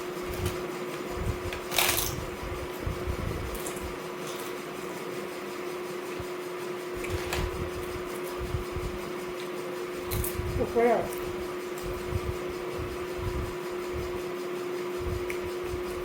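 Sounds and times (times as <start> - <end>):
steady hum: 0.0 - 16.0.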